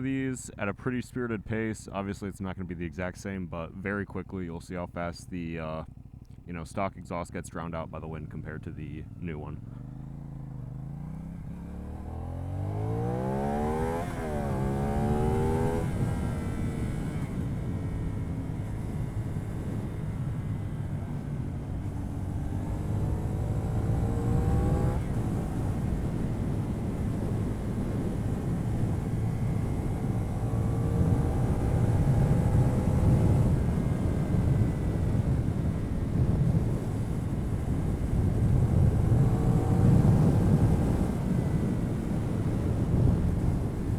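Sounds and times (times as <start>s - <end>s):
motorcycle engine accelerating: 8.2s - 43.9s
wind noise: 23.5s - 43.9s.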